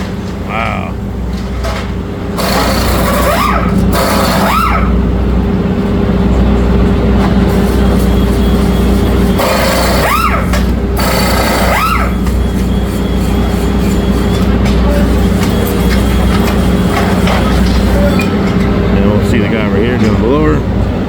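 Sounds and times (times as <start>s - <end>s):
machine drone: 0.0s - 21.0s
short rising and falling squeals: 2.4s - 5.0s, 7.5s - 18.4s.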